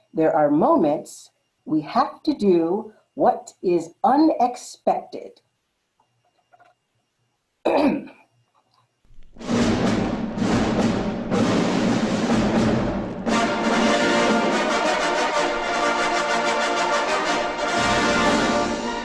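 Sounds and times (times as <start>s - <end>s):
timpani hits: 9.2s - 19.0s
orchestral brass chords: 9.4s - 19.0s.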